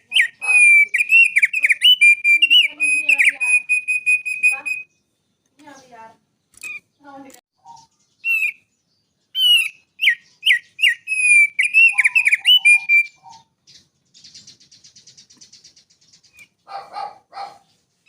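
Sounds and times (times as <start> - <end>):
songbird whistled notes: 0.0 - 5.0, 7.6 - 8.7, 9.3 - 16.6
faint high bird trill: 0.0 - 18.0
harsh bird calls: 0.0 - 18.0.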